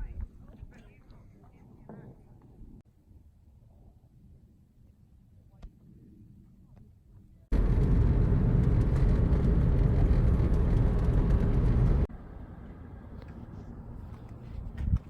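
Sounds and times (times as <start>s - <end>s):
car engine rumble: 7.5s - 15.0s
road and wind noise: 7.5s - 15.0s.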